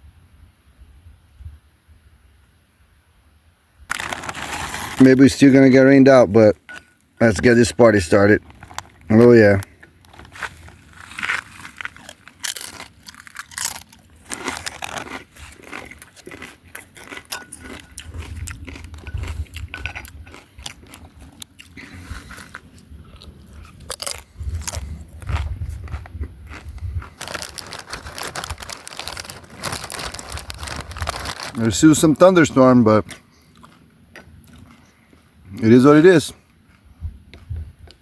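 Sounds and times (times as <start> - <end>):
person chewing tortilla chips: 3.9 - 5.7, 6.7 - 35.8.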